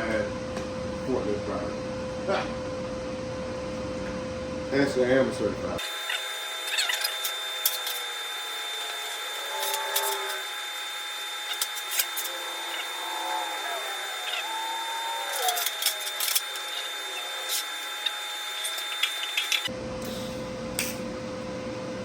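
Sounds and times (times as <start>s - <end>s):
welding arc hissing and crackling: 5.8s - 21.1s
thin high whine: 5.8s - 21.2s.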